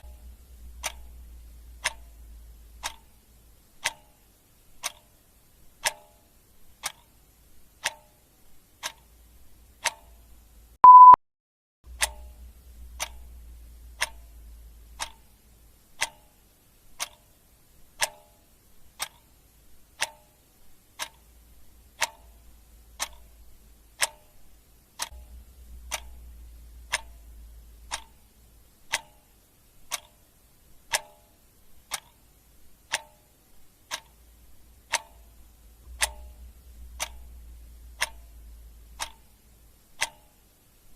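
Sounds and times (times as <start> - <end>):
clock ticking: 0.0 - 11.2, 11.9 - 40.9
short beep: 10.8 - 11.2.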